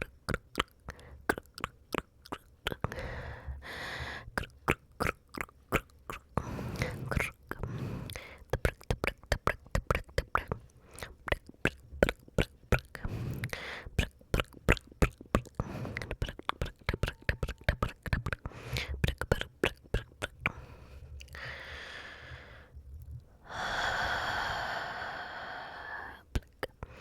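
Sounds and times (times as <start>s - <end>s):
wet tongue clicks and lip smacks: 0.0s - 3.0s, 4.3s - 20.6s, 21.2s - 21.4s, 26.3s - 26.9s
breathy rush of air: 23.4s - 26.2s.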